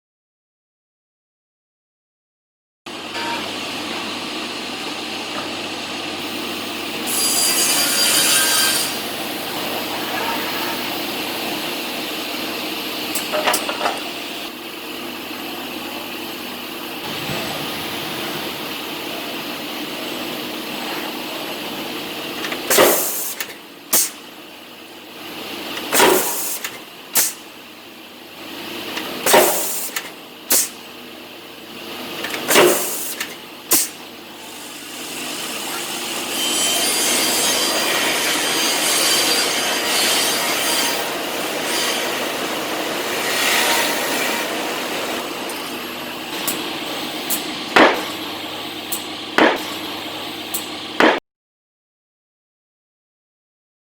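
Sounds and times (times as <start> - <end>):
machinery running: 8.9 - 24.4.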